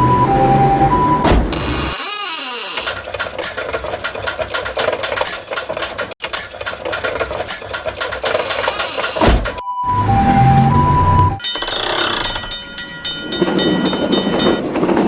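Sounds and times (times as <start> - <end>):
fast mechanical rattling clatter: 2.8 - 9.3.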